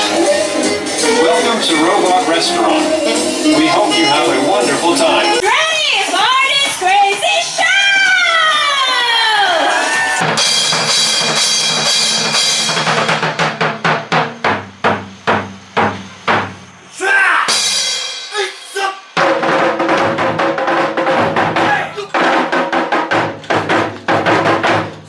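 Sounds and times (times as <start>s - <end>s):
loud show music: 0.0s - 8.1s, 8.9s - 16.8s, 17.5s - 25.0s
drum hits: 10.2s - 16.8s, 19.2s - 25.0s.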